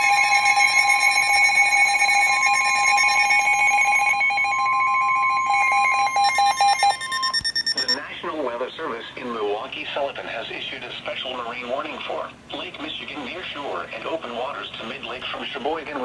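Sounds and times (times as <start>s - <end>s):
two-tone alert signal: 0.0s - 8.0s.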